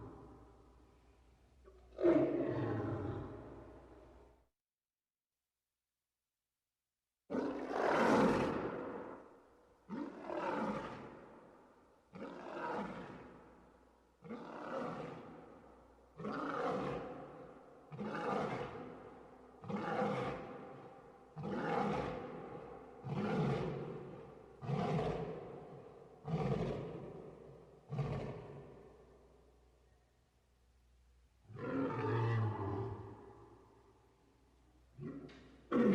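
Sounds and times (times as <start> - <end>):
lion roaring: 16.2 - 19.0, 19.6 - 20.7, 21.4 - 27.3, 27.9 - 28.8, 31.5 - 33.4.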